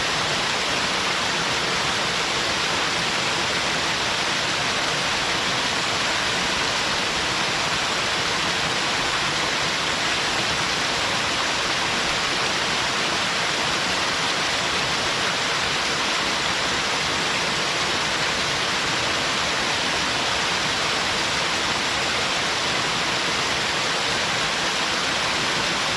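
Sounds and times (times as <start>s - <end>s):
waterfall splashing: 0.0s - 25.9s.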